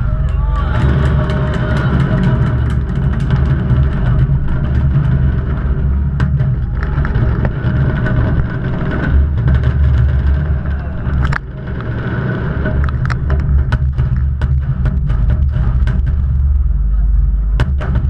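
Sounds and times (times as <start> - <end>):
fireworks shell bursts rumbling: 0.0 - 16.5.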